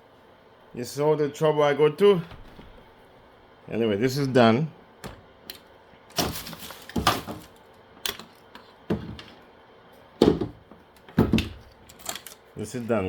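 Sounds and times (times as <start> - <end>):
objects knocking being set down: 6.1 - 8.3, 10.2 - 12.4.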